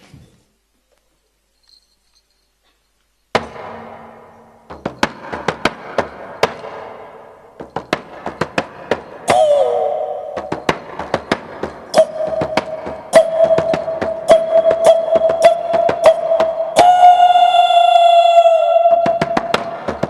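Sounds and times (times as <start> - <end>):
frame drum beats: 3.4 - 9.5, 10.2 - 17.2, 18.8 - 20.0.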